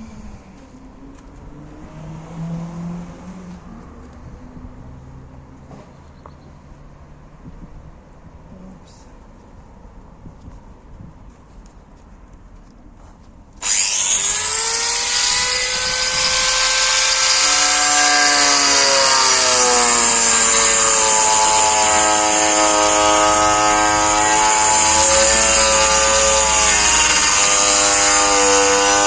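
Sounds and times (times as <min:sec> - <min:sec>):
angle grinder cutting wood: 0:13.6 - 0:29.0.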